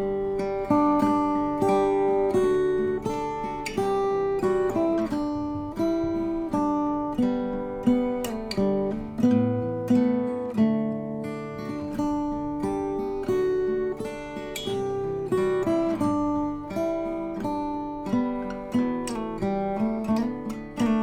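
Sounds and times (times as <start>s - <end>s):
slow acoustic guitar: 0.0s - 21.0s.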